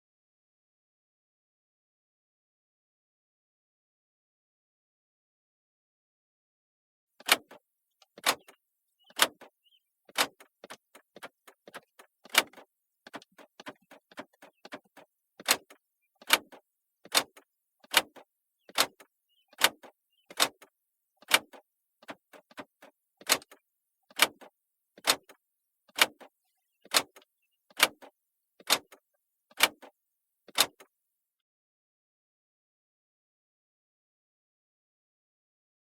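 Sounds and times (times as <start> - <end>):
car door locks clicking: 19.6 - 22.6.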